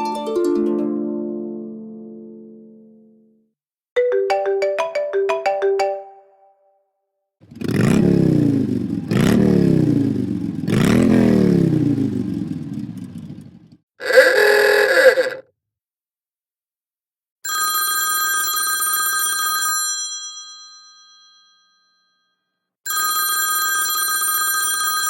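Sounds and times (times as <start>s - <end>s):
bell-like telephone ring: 17.5s - 25.0s.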